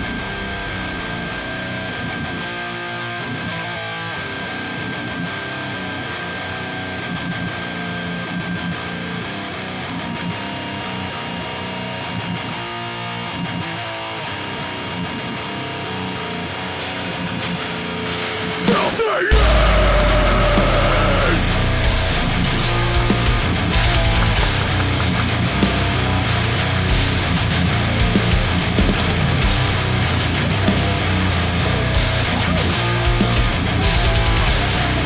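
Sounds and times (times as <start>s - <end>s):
heavy rock music: 0.0s - 35.0s
sharp hits: 17.1s - 26.4s.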